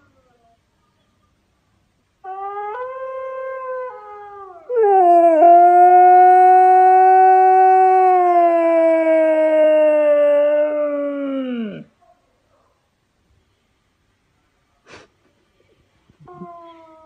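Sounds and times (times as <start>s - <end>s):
dog howling: 2.2s - 11.9s.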